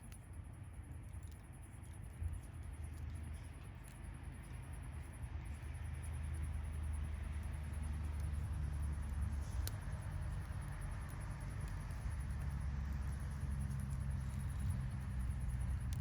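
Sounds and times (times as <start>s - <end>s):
campfire crackling: 7.7s - 16.0s.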